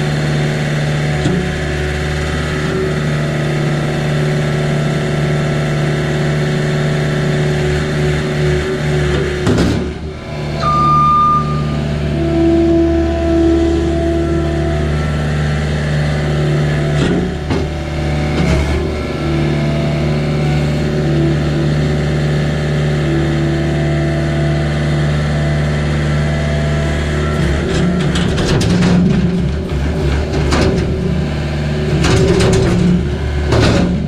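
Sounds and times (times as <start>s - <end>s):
vehicle engine running: 0.0s - 34.0s
knocks and clatters: 9.3s - 10.0s, 27.4s - 31.2s, 31.9s - 34.0s.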